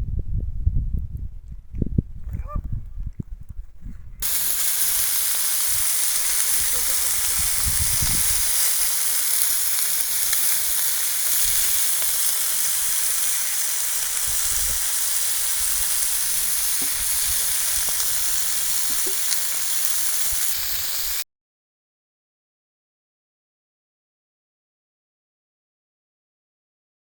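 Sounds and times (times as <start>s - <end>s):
chicken sizzling on stone slab: 4.2s - 21.2s.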